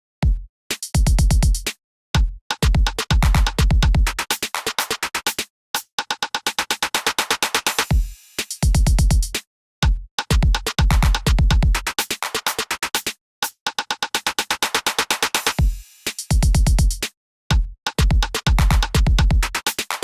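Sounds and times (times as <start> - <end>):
electronic kick drum rolls: 0.2 - 1.6, 2.2 - 4.1, 7.9 - 11.8, 15.6 - 19.5.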